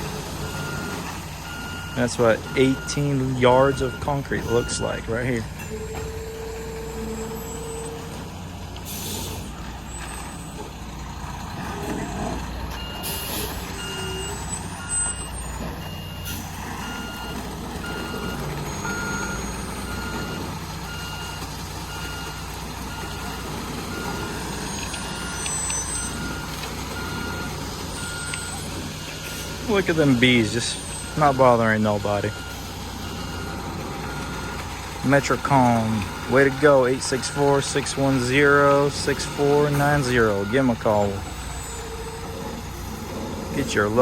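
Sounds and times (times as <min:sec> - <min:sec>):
reversing alarm beeping: 0:00.0 - 0:10.8, 0:11.6 - 0:44.0
diesel truck engine running: 0:00.0 - 0:44.0
air brakes hissing: 0:08.8 - 0:09.6, 0:13.0 - 0:15.3.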